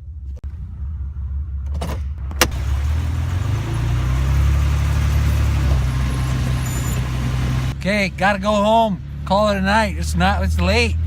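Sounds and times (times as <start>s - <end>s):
pickup truck engine running: 2.2s - 11.0s.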